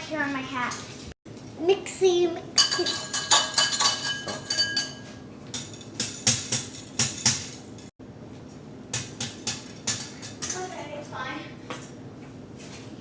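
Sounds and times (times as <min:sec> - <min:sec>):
utensil clinking against cookware: 0:02.6 - 0:07.9.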